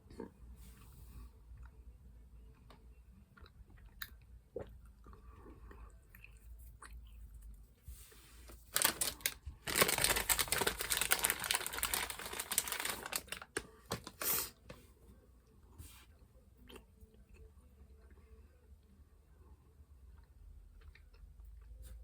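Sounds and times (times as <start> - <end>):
plastic wrapper crinkling: 8.5 - 14.5.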